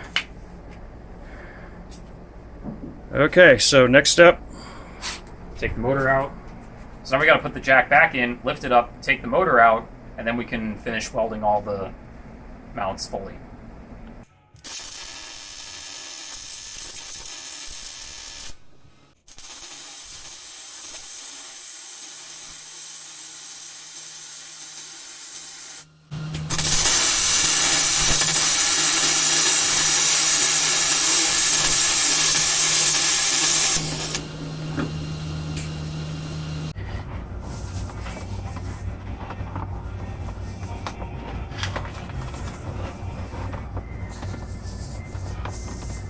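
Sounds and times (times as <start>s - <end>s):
hard steady hiss of tool: 14.7s - 18.6s, 19.3s - 36.8s
steady low hum: 25.9s - 28.5s, 32.3s - 46.0s.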